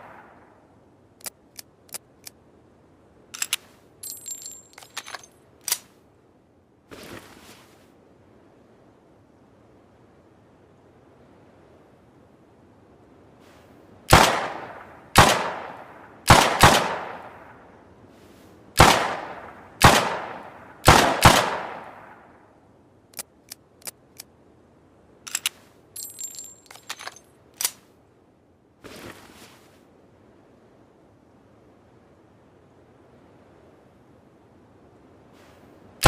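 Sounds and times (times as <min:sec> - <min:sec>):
small metallic clicks: 0:01.2 - 0:02.4, 0:03.3 - 0:06.0, 0:23.1 - 0:24.3, 0:25.2 - 0:27.9
light clicks: 0:03.3 - 0:06.0, 0:25.3 - 0:27.9
short rustle: 0:06.9 - 0:08.0, 0:13.4 - 0:13.9, 0:18.0 - 0:18.6, 0:28.8 - 0:29.9, 0:35.3 - 0:35.8
high ringing tinkle: 0:26.0 - 0:26.9.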